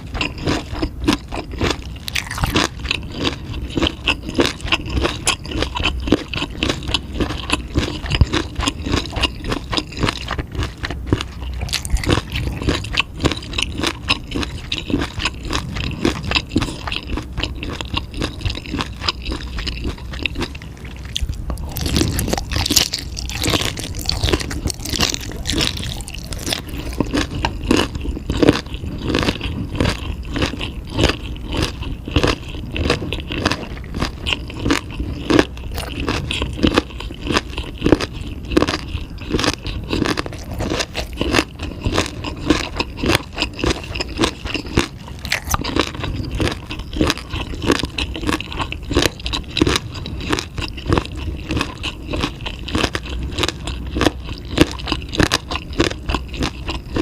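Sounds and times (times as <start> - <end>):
crunchy chewing: 0.0 - 57.0.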